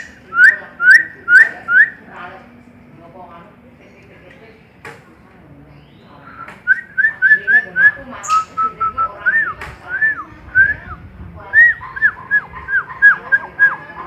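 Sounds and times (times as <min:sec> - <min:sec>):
starling whistled song: 0:00.0 - 0:02.0, 0:05.7 - 0:10.9, 0:11.6 - 0:14.0.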